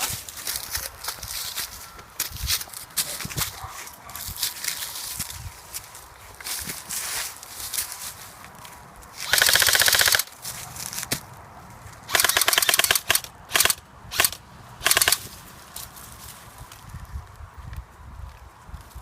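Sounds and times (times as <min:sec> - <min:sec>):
airsoft gun firing bursts: 0:09.2 - 0:10.3, 0:12.1 - 0:15.3.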